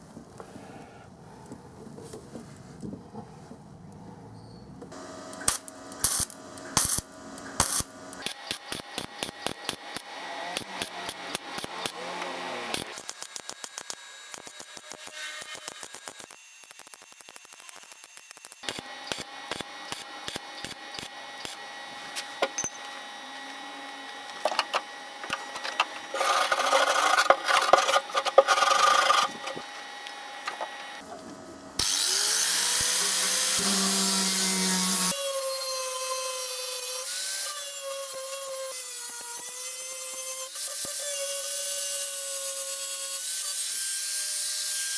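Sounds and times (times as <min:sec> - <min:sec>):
electric power tool running: 0:04.9 - 0:31.0, 0:31.8 - 0:35.2
harsh rasping: 0:26.0 - 0:29.7.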